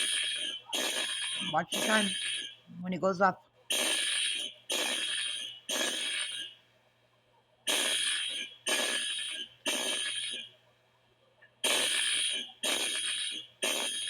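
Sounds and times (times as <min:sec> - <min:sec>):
fire alarm horn blasts: 0:00.0 - 0:02.6, 0:03.7 - 0:06.6, 0:07.7 - 0:10.5, 0:11.6 - 0:14.0.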